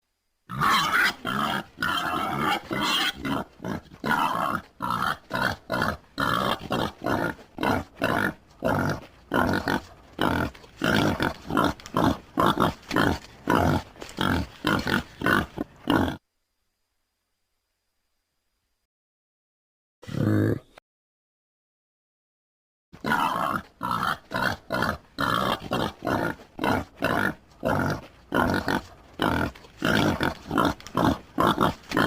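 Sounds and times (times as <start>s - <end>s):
wild boar grunting: 0.5s - 16.2s, 23.0s - 32.0s.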